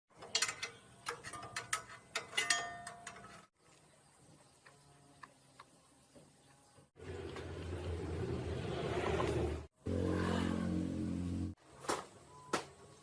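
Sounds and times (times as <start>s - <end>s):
metallic clicks and clinks: 0.1s - 3.5s.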